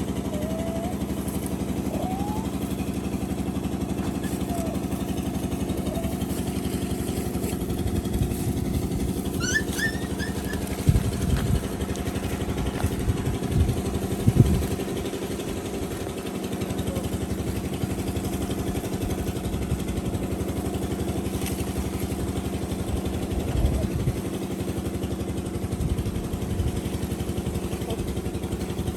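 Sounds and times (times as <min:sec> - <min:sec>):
small engine idling: 0:00.0 - 0:28.9
high chirps: 0:09.4 - 0:10.6.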